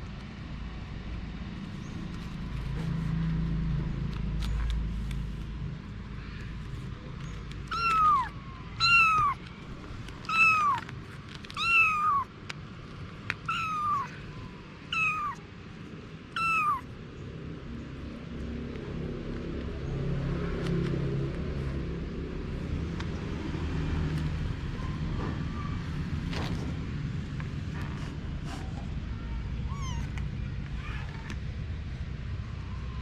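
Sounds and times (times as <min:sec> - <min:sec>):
cat meowing: 0:07.7 - 0:09.4, 0:10.2 - 0:10.9, 0:11.5 - 0:12.3, 0:13.4 - 0:15.4, 0:16.3 - 0:16.9, 0:29.2 - 0:31.4.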